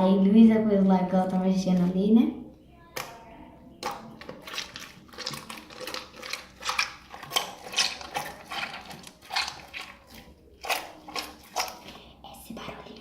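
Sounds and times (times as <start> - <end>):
slime squelching: 2.8 - 13.0.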